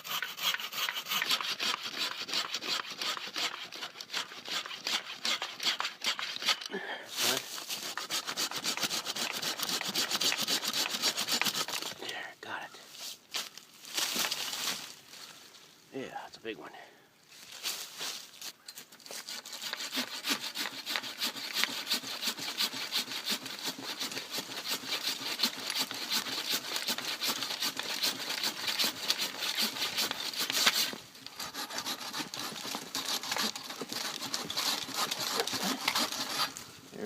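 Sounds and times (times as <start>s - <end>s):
saw cutting wood: 0.0s - 11.9s, 19.1s - 36.6s.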